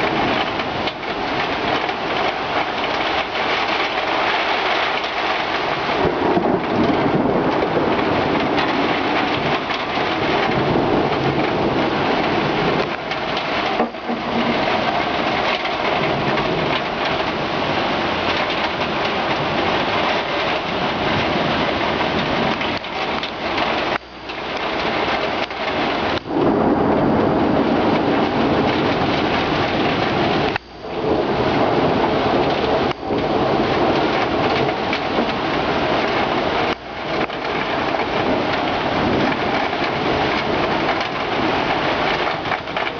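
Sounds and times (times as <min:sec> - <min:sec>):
heavy rain pouring: 0:00.0 - 0:42.9
thunder rumbling: 0:00.0 - 0:42.9.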